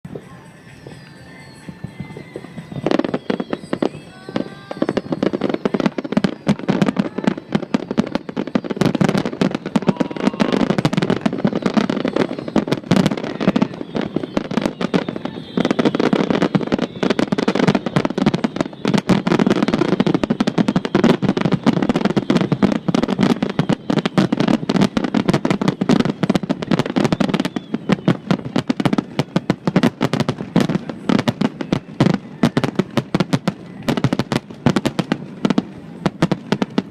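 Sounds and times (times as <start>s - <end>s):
fireworks bangs and crackling: 0.0s - 36.9s.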